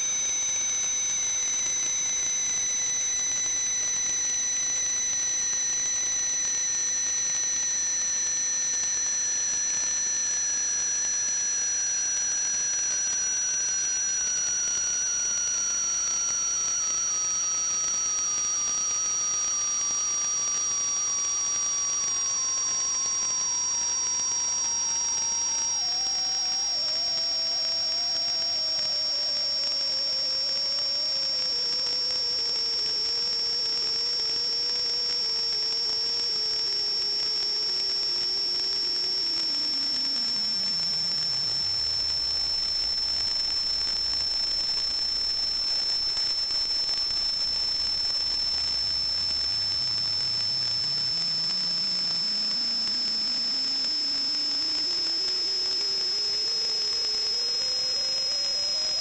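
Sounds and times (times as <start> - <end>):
high steady whistling tone: 0.0 - 59.0
whistling tone sliding down: 36.7 - 59.0.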